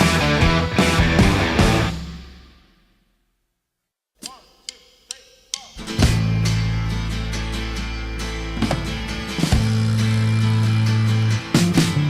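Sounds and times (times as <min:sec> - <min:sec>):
rock music: 0:00.0 - 0:02.6, 0:05.8 - 0:12.0.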